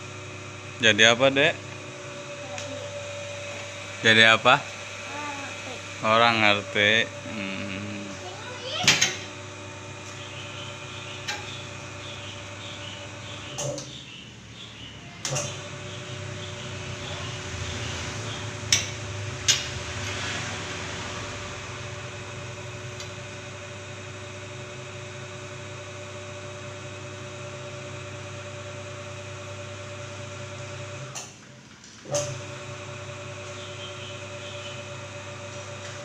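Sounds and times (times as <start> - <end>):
electric motor humming: 0.0 - 13.7.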